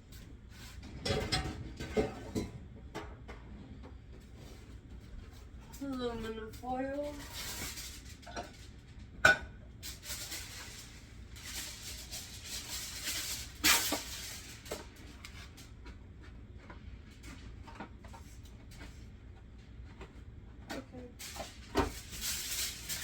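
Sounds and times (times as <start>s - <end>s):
aluminum foil crinkling and tearing: 5.7s - 9.0s, 9.8s - 15.8s, 21.1s - 23.0s.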